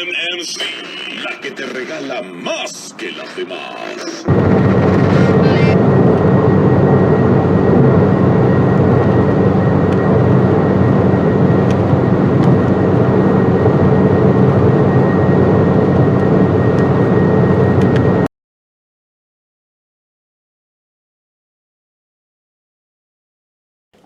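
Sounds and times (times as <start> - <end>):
radio static hiss: 0.0 - 5.8
thin high whine: 0.0 - 18.3.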